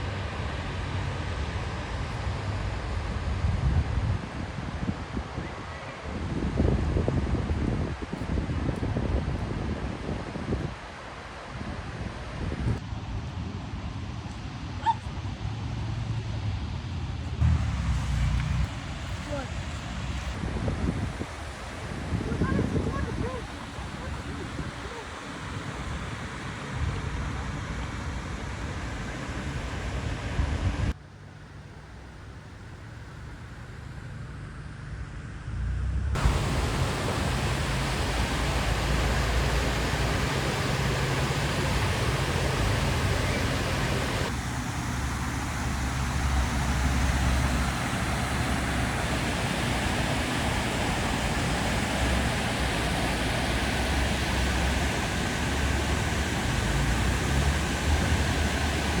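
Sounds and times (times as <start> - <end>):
waterfall roaring: 17.4 - 30.8, 36.2 - 59.0.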